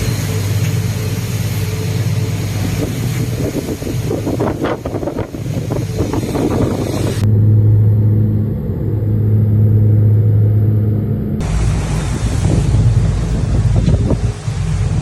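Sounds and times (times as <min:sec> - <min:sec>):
wind buffeting microphone: 0:00.0 - 0:07.3, 0:11.4 - 0:15.0
boat engine running: 0:00.0 - 0:15.0.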